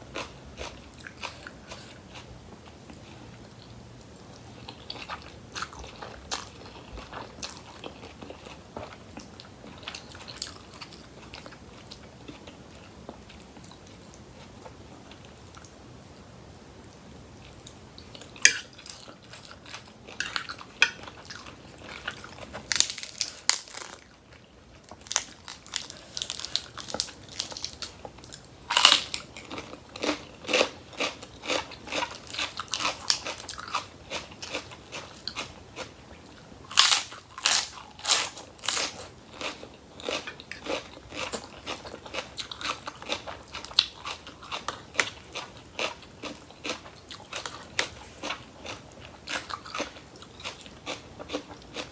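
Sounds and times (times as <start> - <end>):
person chewing crisp vegetables: 0.0 - 15.8, 16.9 - 51.9.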